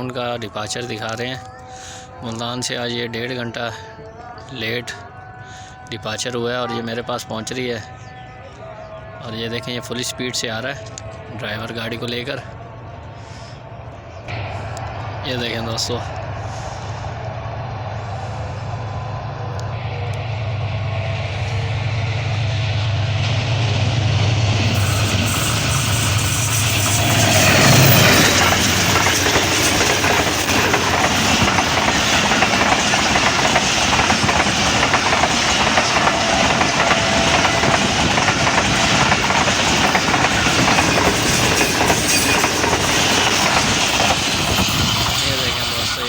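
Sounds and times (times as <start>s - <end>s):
locomotive engine passing: 10.8s - 46.0s
train wheels clickety-clack: 24.6s - 46.0s.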